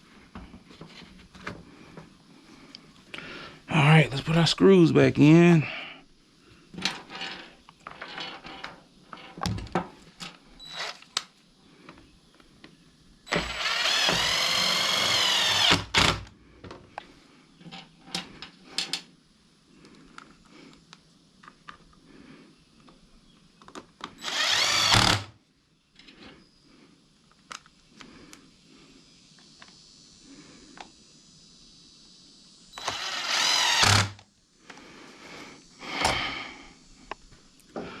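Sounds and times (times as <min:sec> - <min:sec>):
power drill driving screws: 0:10.6 - 0:11.1, 0:13.3 - 0:16.3, 0:24.2 - 0:25.3, 0:32.8 - 0:34.2.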